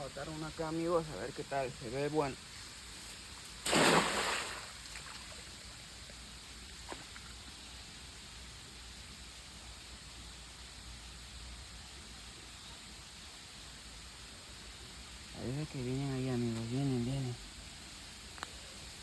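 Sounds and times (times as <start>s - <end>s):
running water: 0.0s - 19.0s
object splashing into water: 3.6s - 5.3s.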